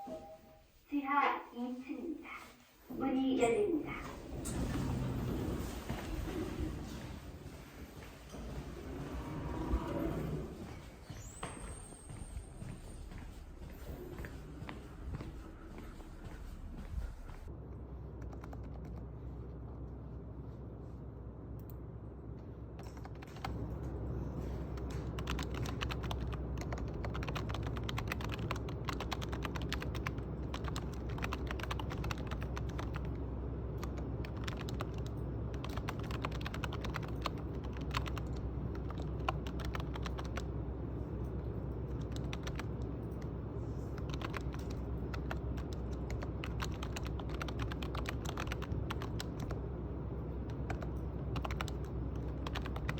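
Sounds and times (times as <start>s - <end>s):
steady low hum: 0.0s - 52.9s
typing on computer keyboard: 24.8s - 33.2s, 33.8s - 40.5s, 41.9s - 43.3s, 44.0s - 49.6s, 50.5s - 52.9s.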